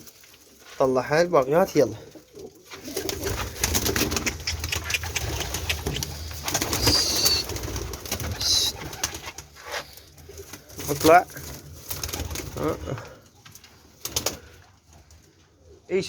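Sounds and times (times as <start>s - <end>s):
rustling: 0.0s - 15.7s
pigeons cooing: 2.0s - 13.4s
short high squeaks: 6.6s - 7.5s.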